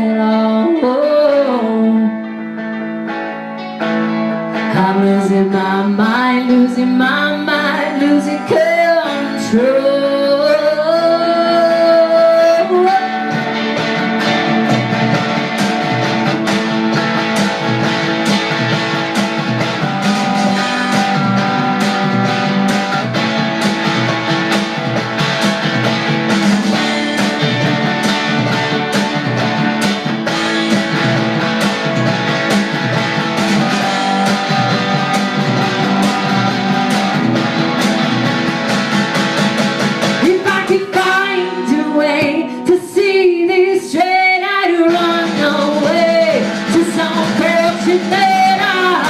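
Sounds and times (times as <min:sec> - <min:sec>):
guitar chords: 0:00.0 - 0:49.0
drum beat: 0:13.4 - 0:40.6.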